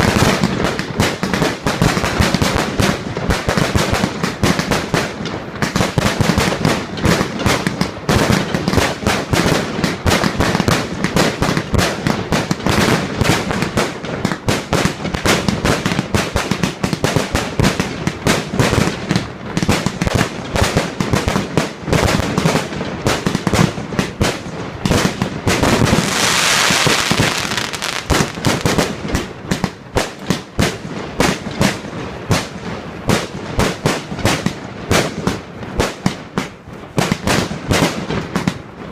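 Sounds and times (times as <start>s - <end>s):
fireworks bangs and crackles: 0.0s - 38.9s
fireworks hissing: 25.6s - 29.2s.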